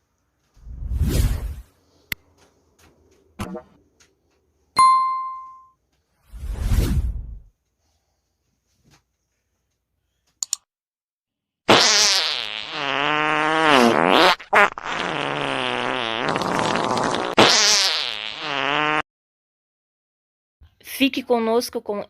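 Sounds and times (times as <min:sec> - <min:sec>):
comic fart noises: 0:11.7 - 0:19.1.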